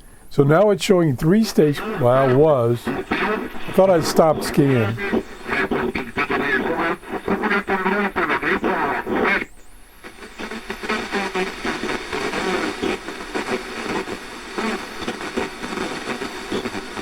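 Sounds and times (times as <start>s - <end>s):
radio static: 0.3s - 17.0s
radio voice: 0.4s - 17.0s.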